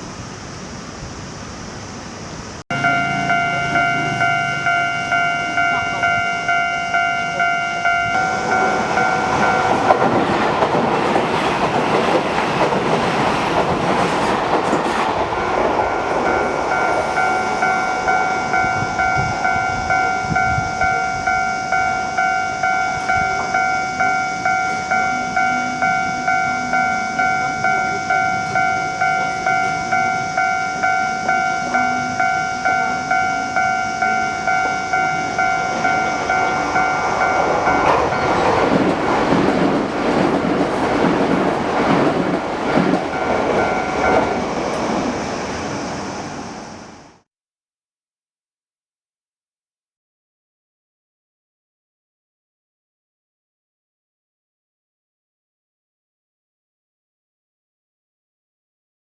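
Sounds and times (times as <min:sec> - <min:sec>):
electric train running over crossing: 0:00.0 - 0:47.2
level-crossing alarm ringing: 0:02.7 - 0:46.8.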